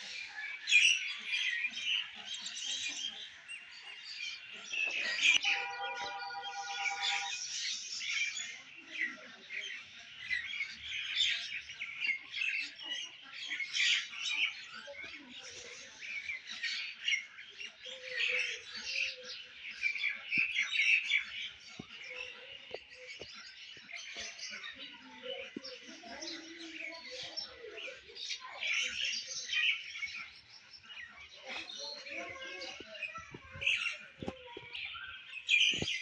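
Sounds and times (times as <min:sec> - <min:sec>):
songbirds chirping and singing: 0:00.0 - 0:36.0.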